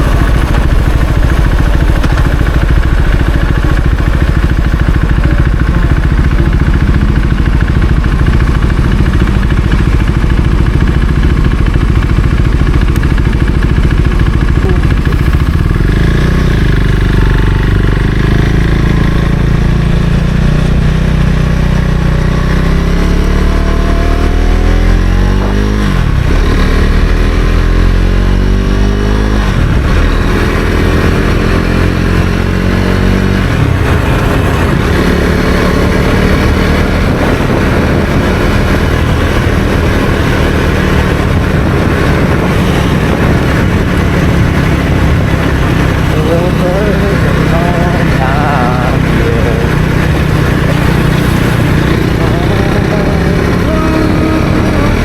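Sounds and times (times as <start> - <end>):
motorcycle engine accelerating: 0.0 - 55.0.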